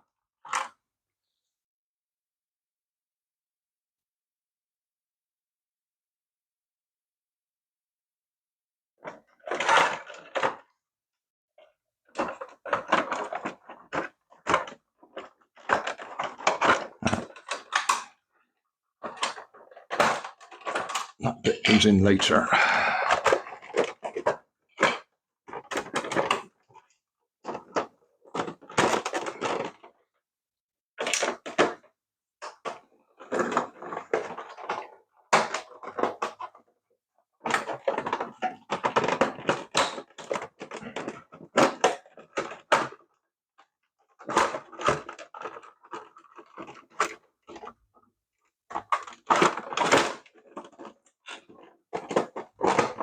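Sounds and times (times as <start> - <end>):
plastic toy parts clicking: 12.2 - 18.2.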